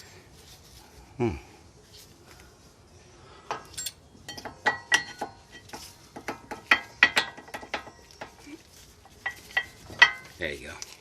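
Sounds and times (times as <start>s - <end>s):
metallic clicks and clinks: 3.6s - 5.8s.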